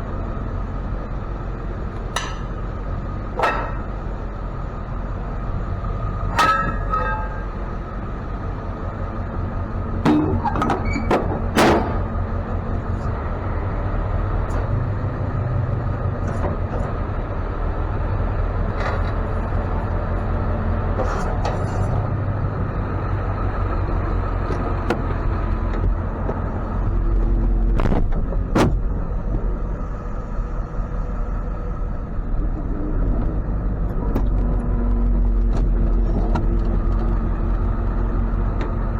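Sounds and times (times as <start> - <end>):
tow truck engine rumbling: 0.0 - 38.9
sharp metal clanks and knocks: 2.1 - 2.7, 3.3 - 4.1, 6.3 - 7.6, 10.0 - 12.1.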